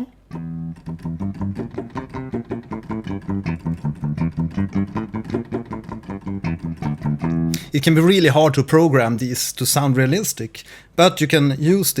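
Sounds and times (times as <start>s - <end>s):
fast legato bass line: 0.4s - 8.3s.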